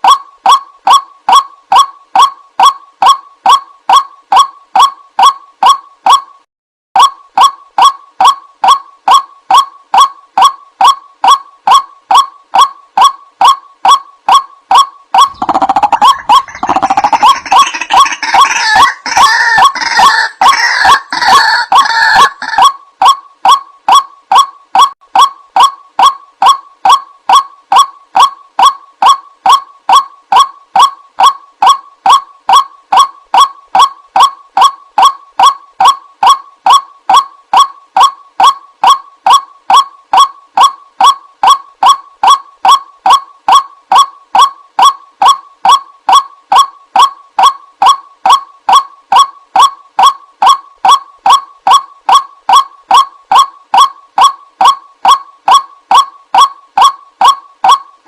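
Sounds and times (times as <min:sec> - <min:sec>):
waterhen kwak calls: 0:14.7 - 0:22.7.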